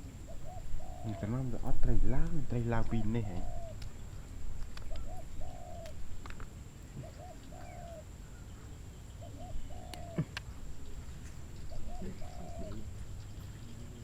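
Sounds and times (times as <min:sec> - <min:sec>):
bird calling: 0:00.0 - 0:14.0
faint clicks: 0:02.2 - 0:05.1, 0:09.8 - 0:10.5.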